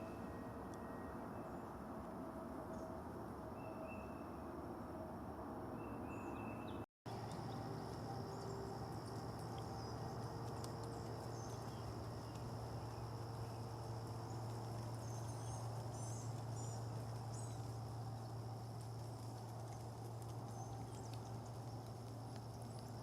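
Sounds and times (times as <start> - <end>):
high insect drone: 7.1 - 23.0
low steady hum: 7.1 - 23.0.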